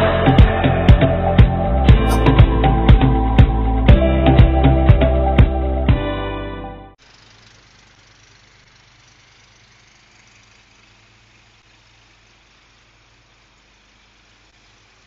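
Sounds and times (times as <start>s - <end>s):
faint mechanical hum with hiss: 7.0s - 15.0s.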